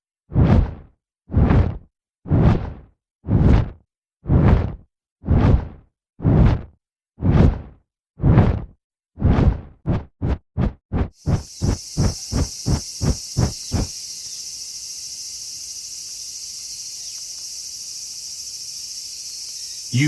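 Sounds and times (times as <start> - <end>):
soft rhythmic thumps: 11.2 - 14.0
high-pitched chirring hiss: 11.2 - 20.0.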